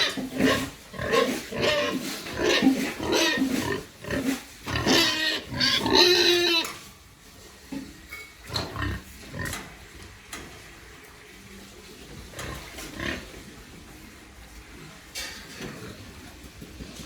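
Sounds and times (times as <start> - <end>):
pigs grunting: 0.0 - 6.8, 8.4 - 9.8, 12.2 - 13.6.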